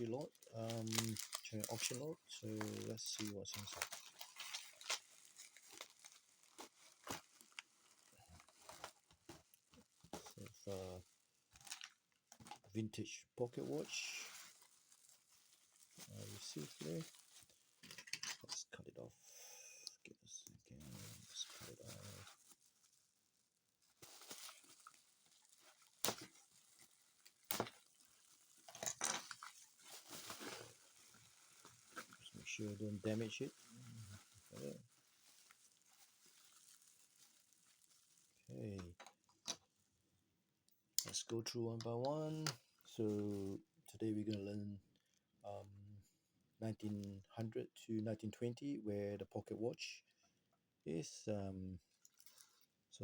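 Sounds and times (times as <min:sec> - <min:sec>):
plastic bag crinkling: 0:00.0 - 0:12.7, 0:13.5 - 0:18.4, 0:20.8 - 0:39.6
wrapping rustling: 0:00.0 - 0:12.7, 0:13.5 - 0:18.5, 0:20.8 - 0:39.8, 0:52.0 - 0:52.7.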